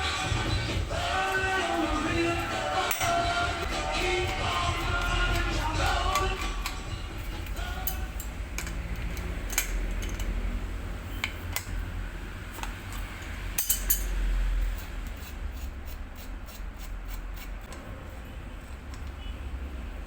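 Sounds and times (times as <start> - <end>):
steady low hum: 0.0 - 20.0
hand tools clinking on metal: 1.2 - 10.4, 12.6 - 14.2.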